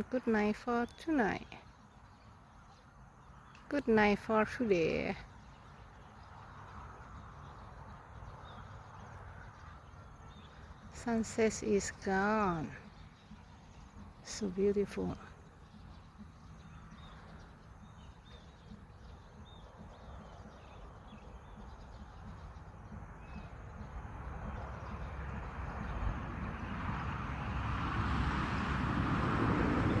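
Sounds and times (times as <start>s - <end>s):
faint bird chirps: 4.8s - 26.0s.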